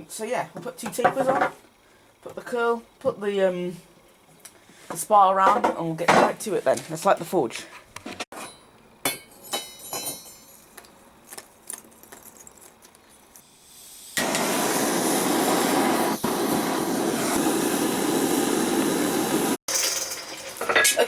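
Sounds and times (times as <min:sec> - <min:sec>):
gas forge burner roaring: 0:12.8 - 0:21.0
gas hissing: 0:13.3 - 0:19.6.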